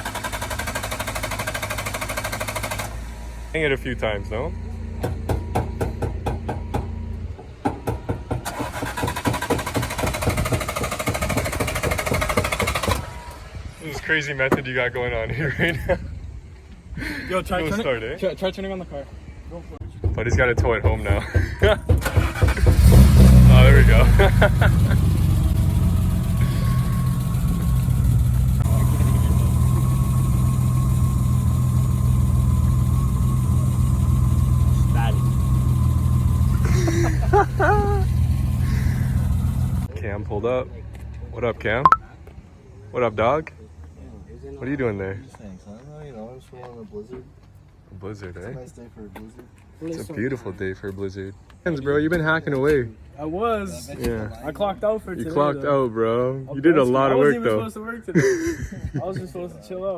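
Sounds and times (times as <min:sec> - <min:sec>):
car engine cranking on starter: 0:00.0 - 0:03.8, 0:08.4 - 0:13.6, 0:21.9 - 0:39.9
sharp knocks: 0:05.0 - 0:13.0.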